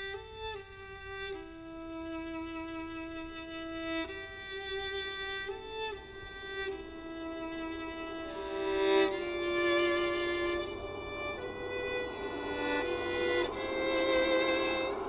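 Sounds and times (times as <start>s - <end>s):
solo violin slow melody: 0.0s - 15.0s.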